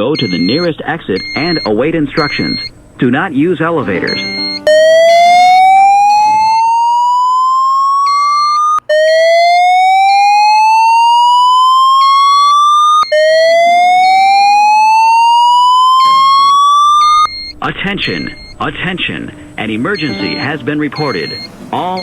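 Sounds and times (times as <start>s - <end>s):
alarm whoop tone rising sweeps: 4.1s - 19.2s.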